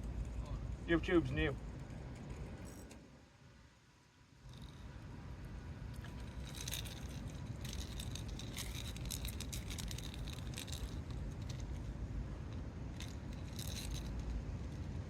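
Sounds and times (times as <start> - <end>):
low steady rumble: 0.0 - 15.0
fishing reel clicking whirr: 6.0 - 11.7.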